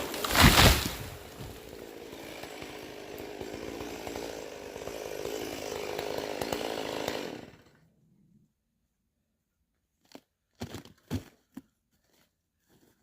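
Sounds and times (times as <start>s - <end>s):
two-stroke chainsaw running: 0.0s - 7.8s.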